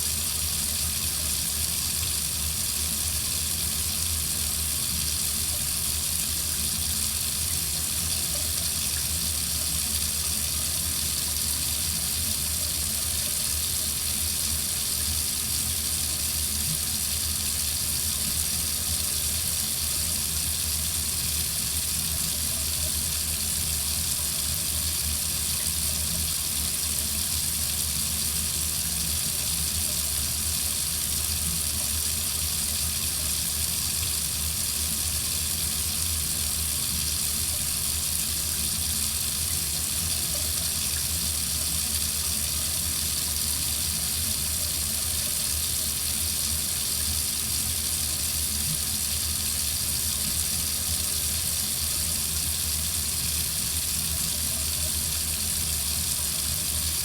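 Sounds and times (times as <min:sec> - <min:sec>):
tap water running into sink: 0:00.0 - 0:57.0.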